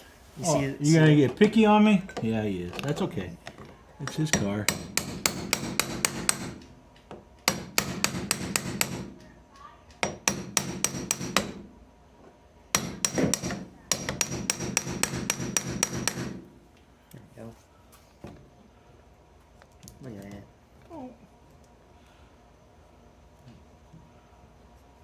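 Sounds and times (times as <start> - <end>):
sharp metallic taps: 4.1 - 6.7.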